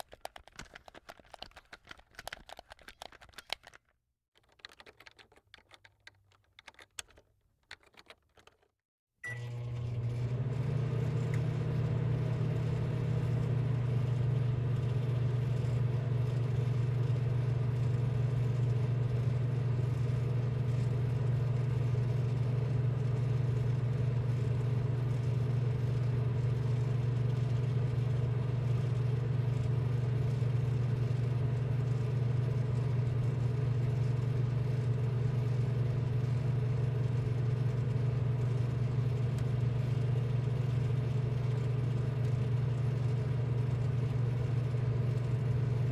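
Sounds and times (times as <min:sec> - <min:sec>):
low machine hum: 0:09.2 - 0:45.9.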